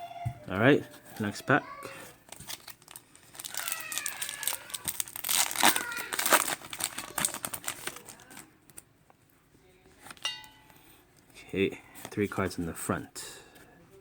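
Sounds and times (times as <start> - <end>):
foil wrapper crinkling and tearing: 2.3 - 8.8.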